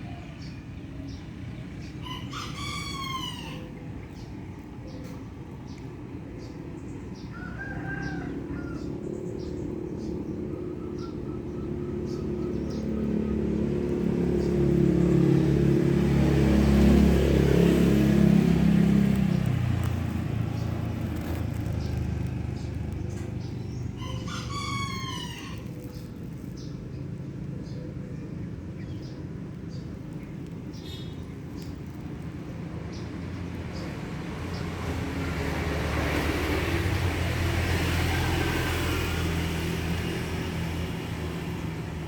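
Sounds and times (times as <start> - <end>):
vehicle engine passing by: 0.0 - 42.0
rooster crowing: 2.0 - 3.7, 7.2 - 9.1, 23.9 - 25.8.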